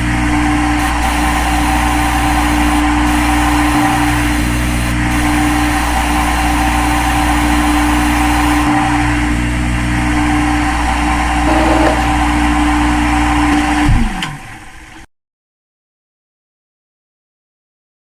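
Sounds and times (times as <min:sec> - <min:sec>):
spindle winding down: 0:11.4 - 0:12.5
machine motor hum: 0:11.4 - 0:12.6.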